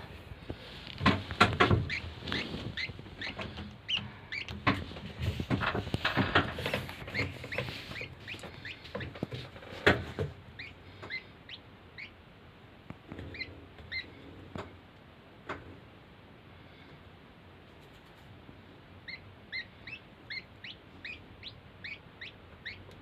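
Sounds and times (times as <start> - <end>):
rustling: 0.0 - 10.7
baby bird cheeping: 1.6 - 4.6, 6.7 - 9.4, 10.5 - 12.2, 13.2 - 14.2, 19.0 - 23.0.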